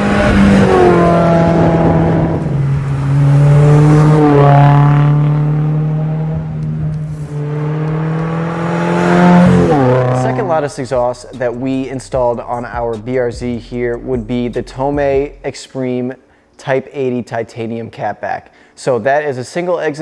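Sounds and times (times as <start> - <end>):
car engine accelerating through gears: 0.0 - 11.0.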